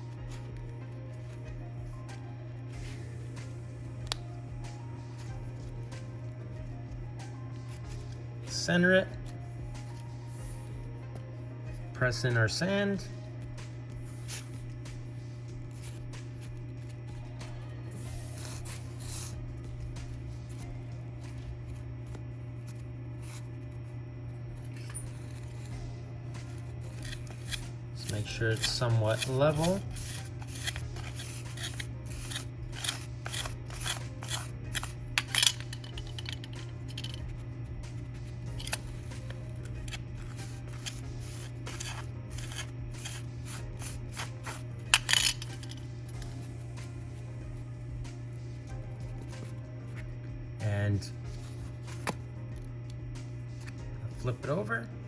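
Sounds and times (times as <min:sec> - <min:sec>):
steady low hum: 0:00.0 - 0:55.0
metal clatter: 0:44.9 - 0:45.8.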